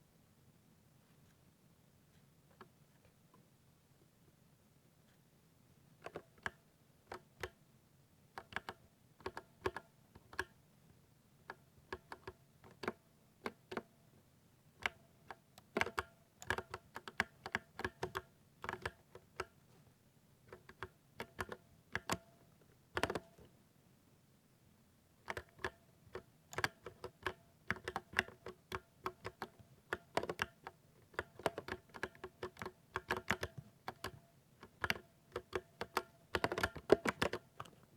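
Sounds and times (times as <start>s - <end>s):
mechanical keyboard typing: 8.4s - 10.5s, 15.6s - 19.5s, 20.5s - 22.3s, 23.0s - 23.3s, 25.2s - 37.8s.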